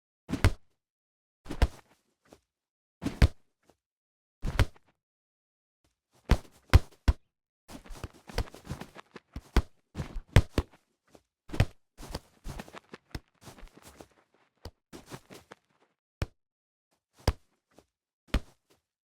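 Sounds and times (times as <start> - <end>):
football tackle impacts: 6.3 - 7.2, 7.8 - 10.7.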